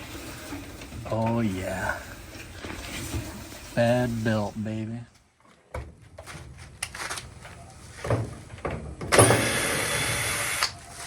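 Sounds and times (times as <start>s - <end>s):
small electric motor running: 9.2s - 10.7s.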